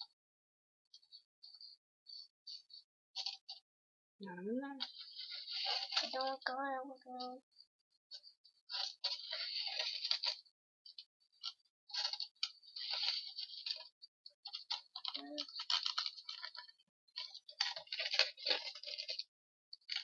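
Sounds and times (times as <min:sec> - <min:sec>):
dry herbs crackling and scraping: 0:04.4 - 0:07.4, 0:08.7 - 0:10.4, 0:11.4 - 0:20.0.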